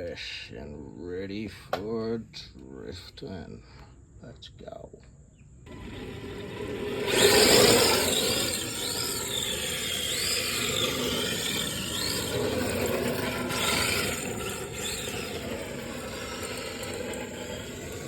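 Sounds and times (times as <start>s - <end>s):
toy car motor whining: 5.7s - 18.0s.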